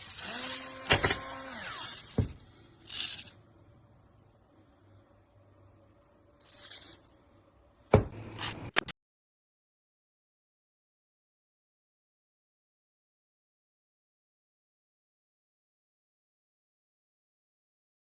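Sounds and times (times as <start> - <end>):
electric grinder whirring: 0.0 - 2.2.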